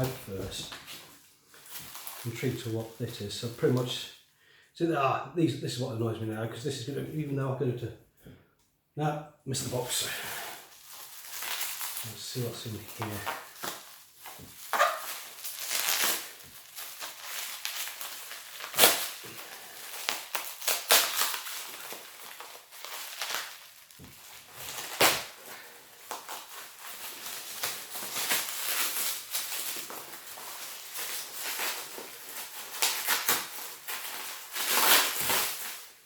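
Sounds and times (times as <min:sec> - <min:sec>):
packaging rustling and crinkling: 0:00.0 - 0:04.0, 0:09.8 - 0:36.0.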